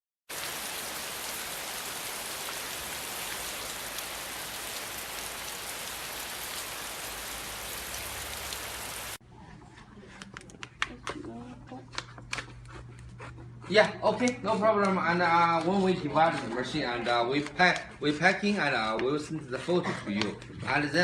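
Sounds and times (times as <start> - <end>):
steady hiss with faint crackles: 0.3 - 9.2.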